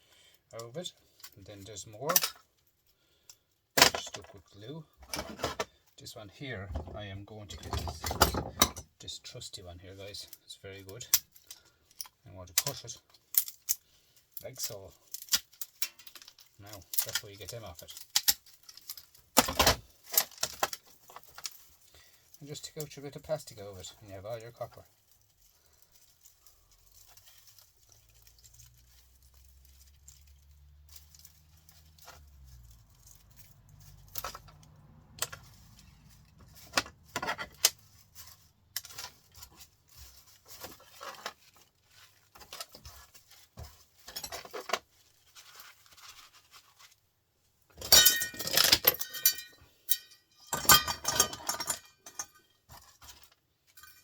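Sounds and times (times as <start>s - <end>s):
metal pieces clattering: 47.8s - 52.8s
metal pieces clinking: 47.8s - 54.0s.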